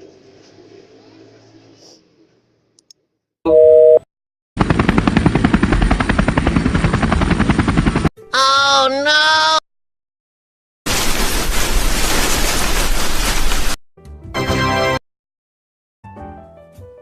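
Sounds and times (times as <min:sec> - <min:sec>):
two-tone electronic beep: 0:03.5 - 0:04.0.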